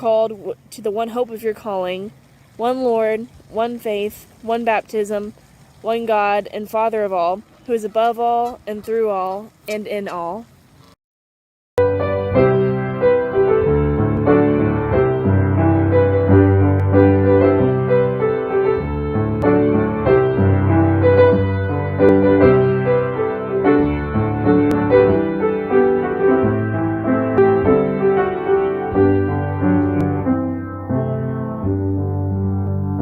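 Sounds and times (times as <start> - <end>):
slow solo piano: 11.8 - 33.0.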